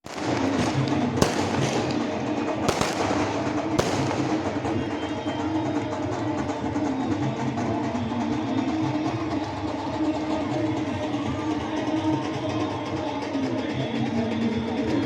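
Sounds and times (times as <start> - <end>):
fireworks bangs: 0.0 - 6.0
crowd noise: 0.0 - 15.0
music: 0.1 - 15.0.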